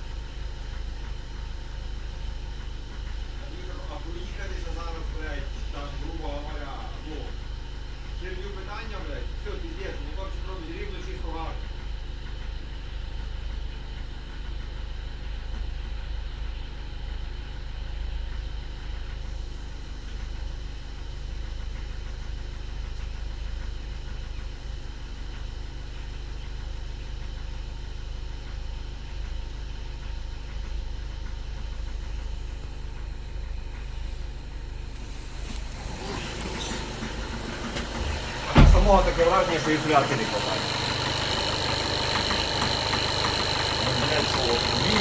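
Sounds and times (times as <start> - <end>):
diesel car engine idling: 34.8 - 45.0.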